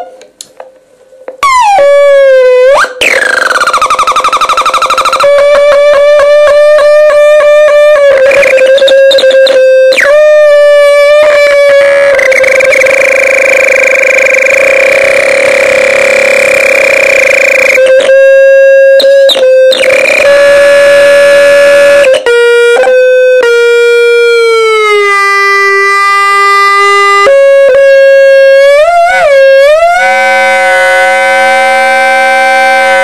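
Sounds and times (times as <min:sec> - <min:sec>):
electronic feedback howling: 0:01.4 - 0:22.2.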